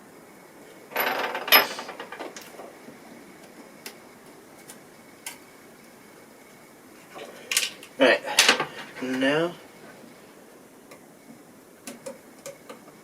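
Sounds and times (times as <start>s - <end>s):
tools clattering: 0.9s - 2.4s.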